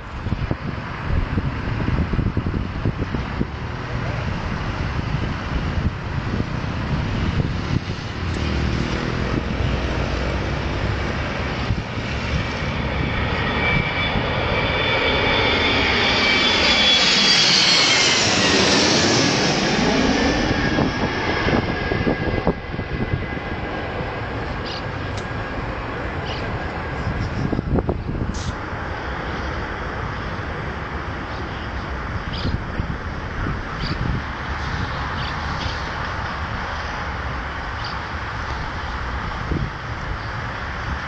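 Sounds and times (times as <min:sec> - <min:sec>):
airplane passing overhead: 0:00.0 - 0:41.0.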